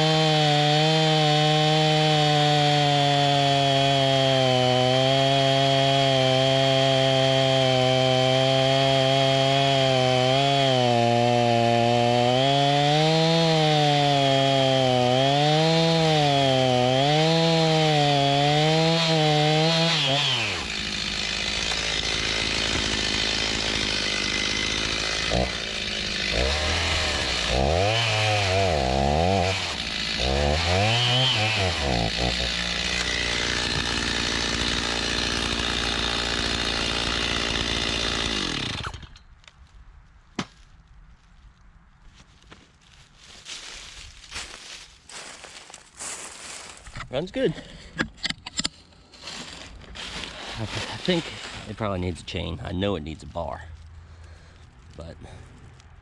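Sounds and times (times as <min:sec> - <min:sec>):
chainsaw idling: 0:00.0 - 0:39.2, 0:49.3 - 0:52.7
chainsaw revving: 0:00.0 - 0:39.2, 0:49.3 - 0:52.6
chainsaw cutting wood: 0:00.0 - 0:39.3, 0:44.3 - 0:53.5.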